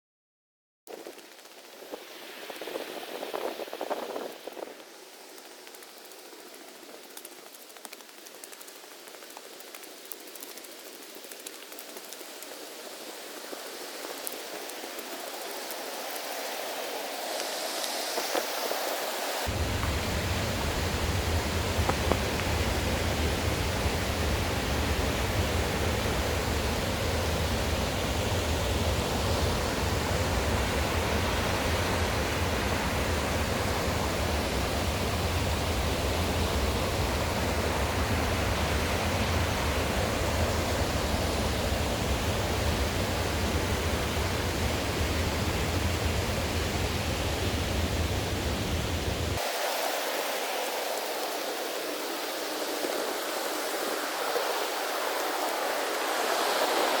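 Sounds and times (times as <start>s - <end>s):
rushing stream water: 12.0s - 57.0s.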